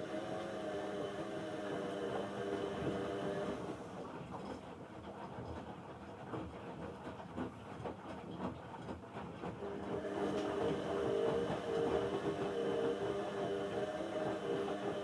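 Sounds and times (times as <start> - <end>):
washing machine motor hum: 0.0 - 15.0
washing machine clacking and knocking: 4.3 - 13.2.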